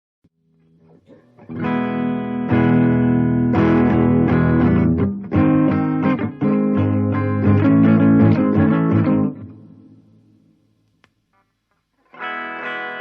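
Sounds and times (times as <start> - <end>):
electric guitar strummed chords: 1.4 - 9.9, 12.1 - 13.0.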